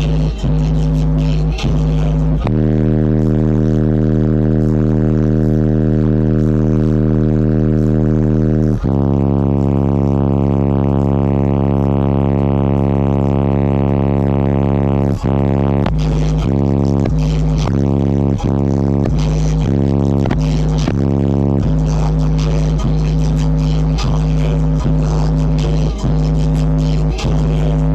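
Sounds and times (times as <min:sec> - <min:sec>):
bass-heavy music through subwoofers: 0:00.0 - 0:27.9.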